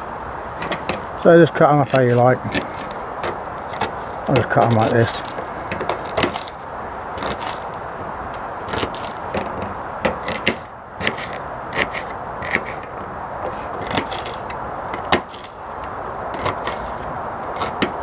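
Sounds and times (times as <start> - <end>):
knife chopping on a board: 3.6 - 6.6, 7.2 - 7.7, 8.7 - 12.8, 13.5 - 15.6, 16.4 - 18.0.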